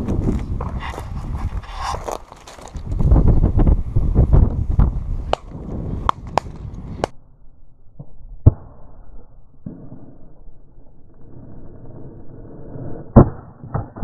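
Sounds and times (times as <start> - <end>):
low rumbling on microphone: 2.7 - 7.3.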